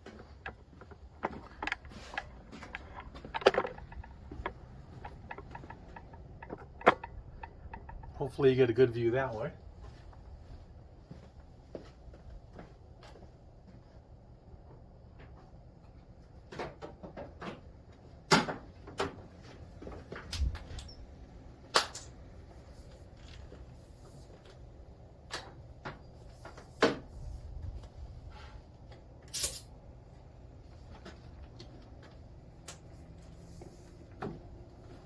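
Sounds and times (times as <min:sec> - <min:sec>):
air-line couplers clicking onto valves: 0:00.4 - 0:08.2, 0:32.6 - 0:33.0.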